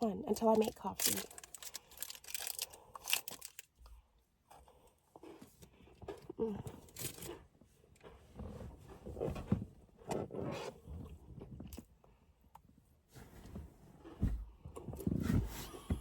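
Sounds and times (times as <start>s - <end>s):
person chewing crunchy snack: 1.0s - 3.7s.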